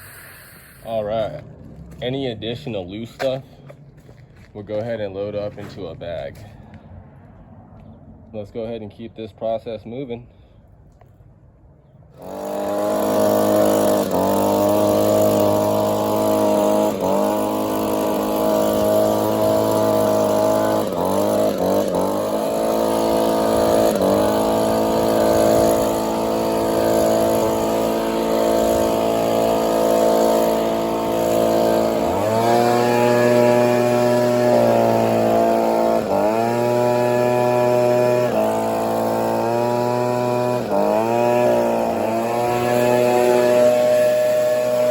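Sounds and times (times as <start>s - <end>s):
small gas engine revving: 0.0s - 2.0s, 12.1s - 44.9s.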